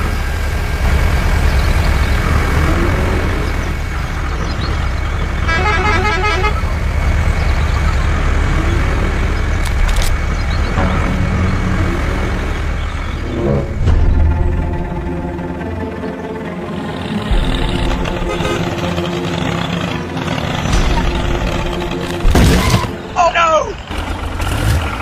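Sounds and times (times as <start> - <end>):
horn stuttering: 2.0 - 25.0
brief clicks: 9.6 - 10.2.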